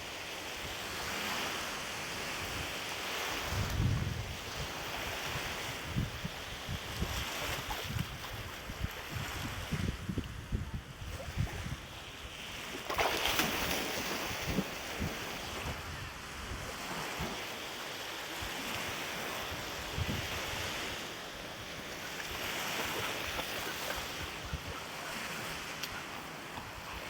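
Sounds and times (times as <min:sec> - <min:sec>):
wind buffeting microphone: 0:03.4 - 0:12.6, 0:13.3 - 0:17.4, 0:19.5 - 0:21.1
strong wind rushing: 0:03.5 - 0:04.5.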